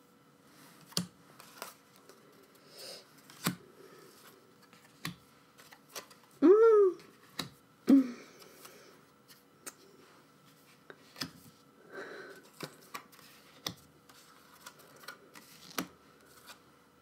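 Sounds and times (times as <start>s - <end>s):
cards clicking and tapping on desk: 12.4s - 15.9s.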